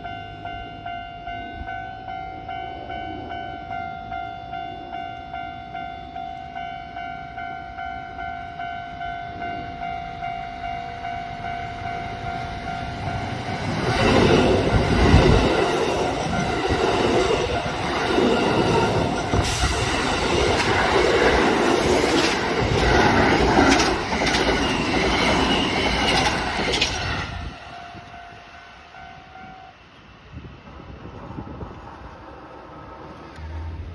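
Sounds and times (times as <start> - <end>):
electric train passing: 0.0 - 33.9
train wheels clattering: 13.0 - 27.7.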